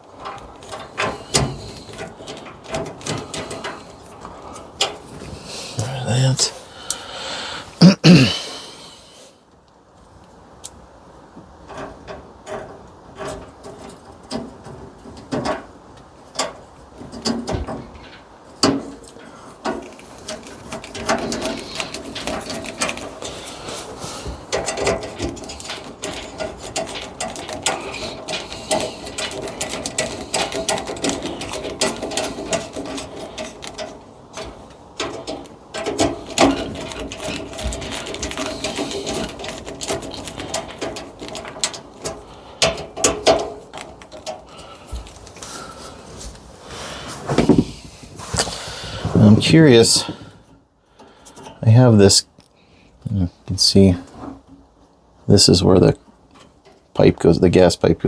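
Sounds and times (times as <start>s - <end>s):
metal parts clicking and rattling: 0.1s - 5.4s, 16.3s - 46.3s.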